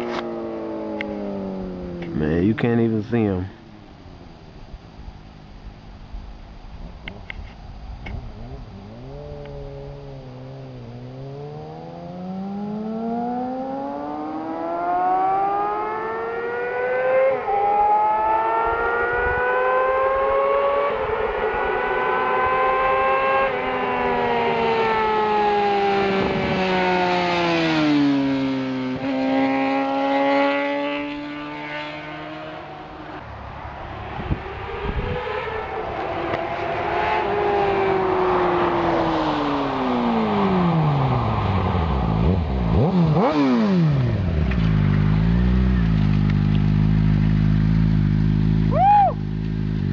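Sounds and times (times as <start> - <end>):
another engine note rising: 0.0 - 49.9
sport bike engine passing at speed: 0.0 - 49.9.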